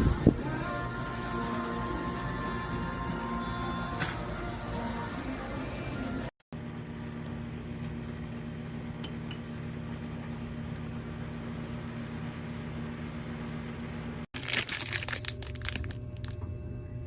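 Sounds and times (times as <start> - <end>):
crinkling and clicking handling noises: 14.4 - 16.4
steady low hum: 15.0 - 17.0.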